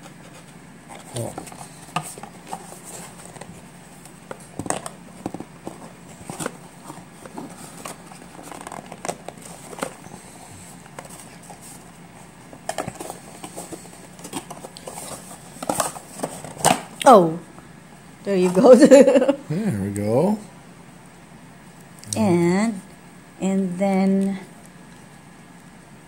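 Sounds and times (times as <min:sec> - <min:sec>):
packaging rustling: 0:00.0 - 0:17.0.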